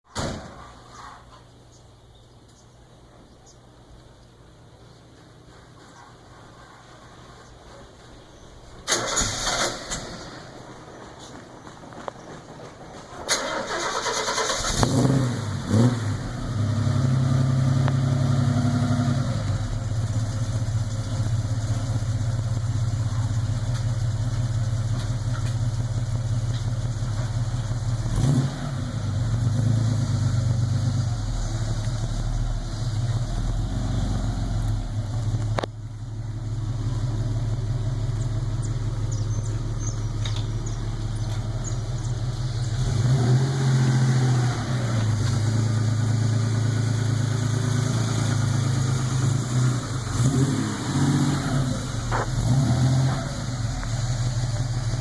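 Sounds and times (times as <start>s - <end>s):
car engine starting and idling: 8.6s - 55.0s.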